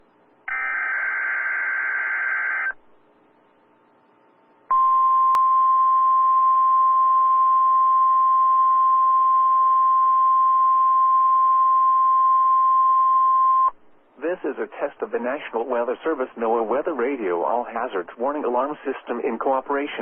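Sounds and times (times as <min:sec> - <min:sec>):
steady warning alarm tone: 0:00.5 - 0:02.8
faint radio hiss: 0:13.7 - 0:20.0.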